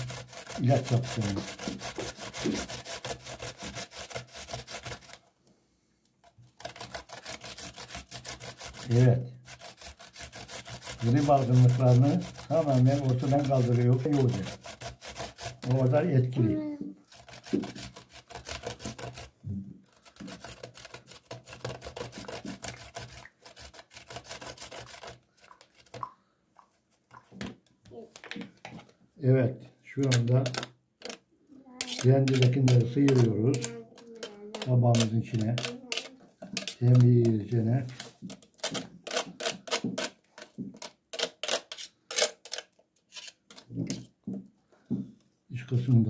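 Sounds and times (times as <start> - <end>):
radish grated on metal grater: 0.0 - 5.2, 6.2 - 26.0, 30.0 - 31.2, 31.8 - 44.0.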